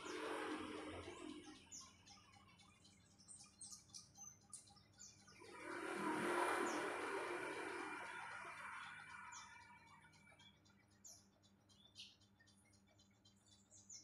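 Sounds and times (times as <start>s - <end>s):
small birds chirping: 0.0s - 14.0s
broad rushing noise: 5.4s - 9.3s.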